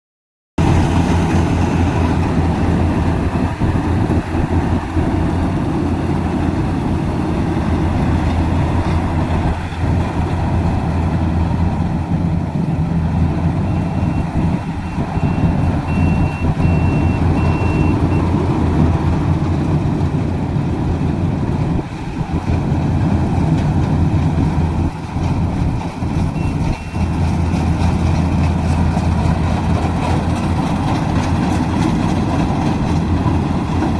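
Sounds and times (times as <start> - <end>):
combine harvester engine hum: 0.6 - 33.9
faint high beeps: 13.6 - 18.2.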